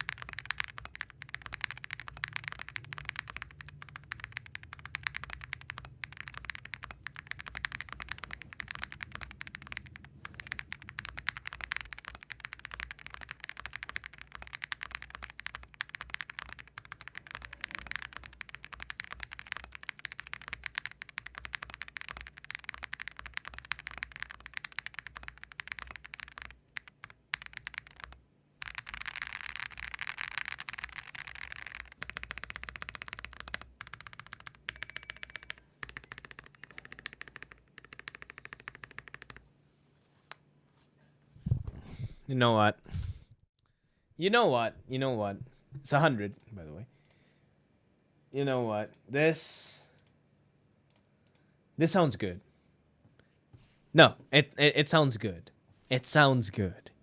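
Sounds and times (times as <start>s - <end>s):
mechanical keyboard typing: 0.0s - 39.5s.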